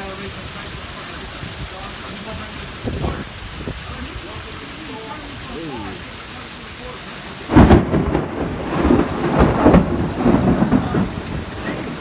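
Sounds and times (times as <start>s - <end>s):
heavy rain falling: 0.0s - 12.0s
rumbling thunder: 7.3s - 12.0s.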